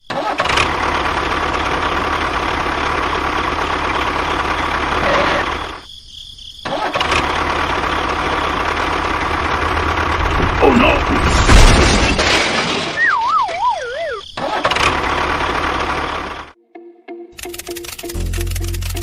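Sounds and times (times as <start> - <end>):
motor running: 17.4 - 19.0.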